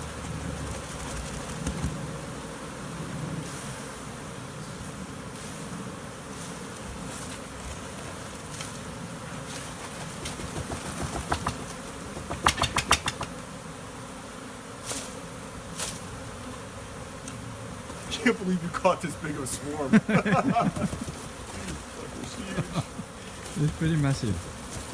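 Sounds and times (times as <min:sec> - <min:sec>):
bee swarm buzzing: 0:00.0 - 0:24.9
sharp clicks: 0:12.3 - 0:13.3.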